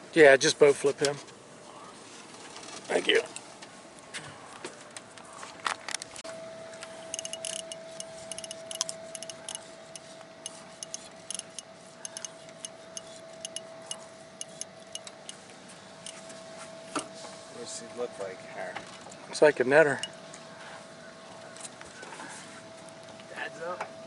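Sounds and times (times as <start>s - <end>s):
steady high tone: 6.2s - 15.4s
fishing reel clicking: 7.1s - 13.6s, 14.4s - 15.2s.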